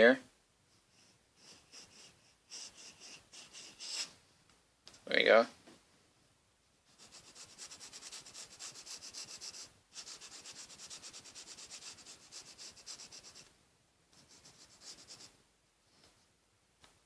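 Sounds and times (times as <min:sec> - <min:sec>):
scribbling on paper: 0:01.0 - 0:04.1, 0:06.9 - 0:13.5, 0:14.2 - 0:15.3.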